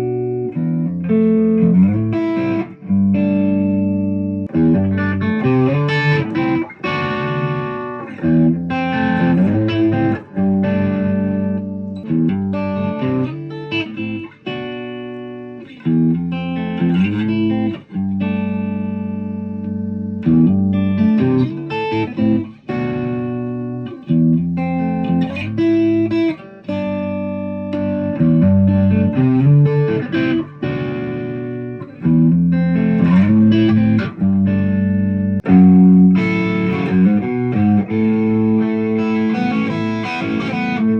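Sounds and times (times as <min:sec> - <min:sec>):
electric guitar playing: 0:00.0 - 0:40.9.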